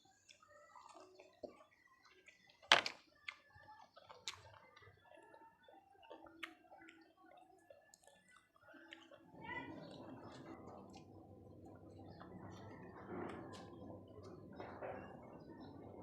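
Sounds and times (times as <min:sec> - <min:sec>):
quiet chewing with sharp clicks: 0:00.0 - 0:15.8.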